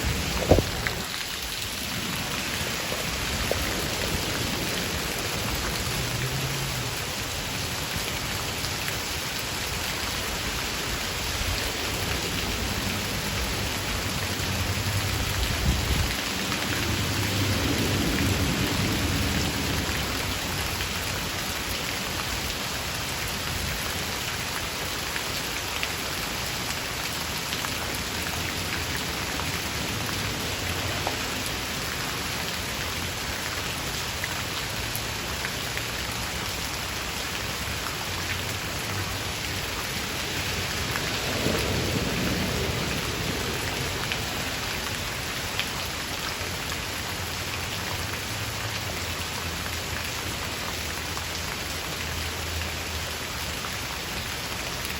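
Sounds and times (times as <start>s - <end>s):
rain falling: 0.0s - 54.9s
thunder rumbling: 40.5s - 44.6s.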